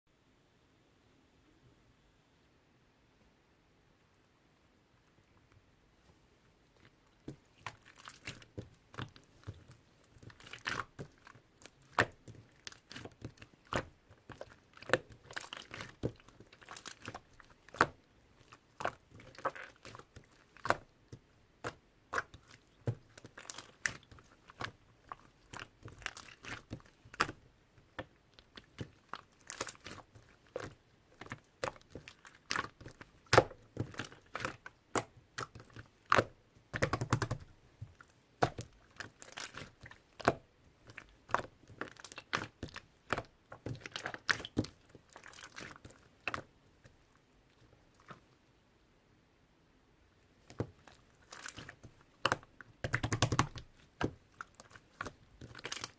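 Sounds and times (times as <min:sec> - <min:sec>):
slime clicking and crackling: 0:07.2 - 0:46.5, 0:50.5 - 0:55.9.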